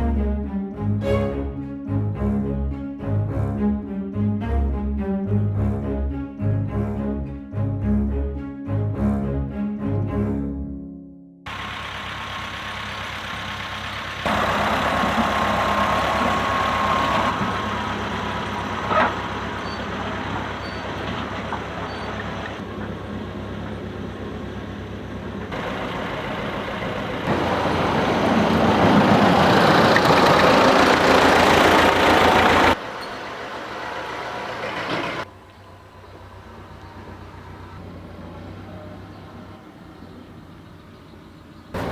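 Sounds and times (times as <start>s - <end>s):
tractor engine under load: 11.5s - 41.9s.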